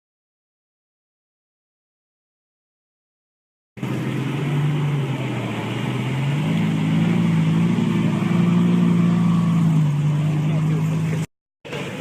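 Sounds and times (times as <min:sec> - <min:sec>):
car engine running: 0:03.8 - 0:12.0.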